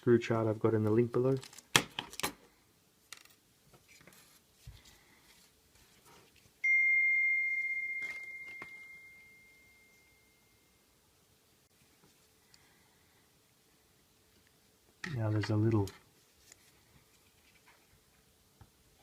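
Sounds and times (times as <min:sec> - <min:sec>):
bell-like ding: 0:06.6 - 0:10.7.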